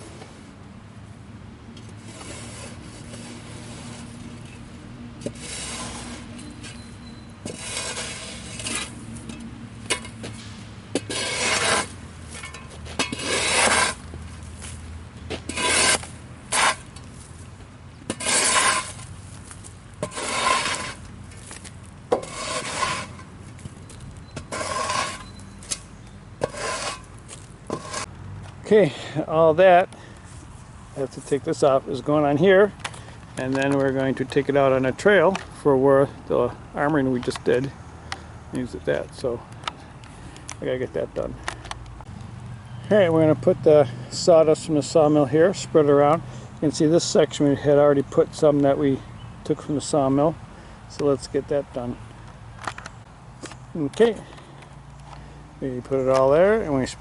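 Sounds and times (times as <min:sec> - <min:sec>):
rake board scraping sawdust: 0:01.8 - 0:09.3, 0:09.9 - 0:28.1, 0:55.1 - 0:57.0.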